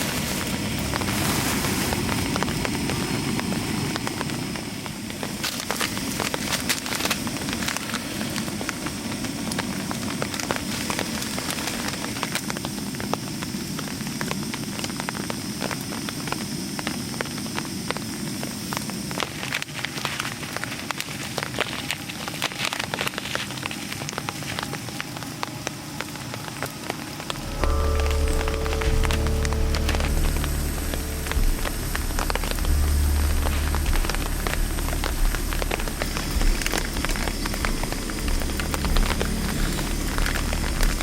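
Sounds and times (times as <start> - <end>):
campfire crackling and popping: 0.0 - 41.0
low rumble: 27.3 - 41.0.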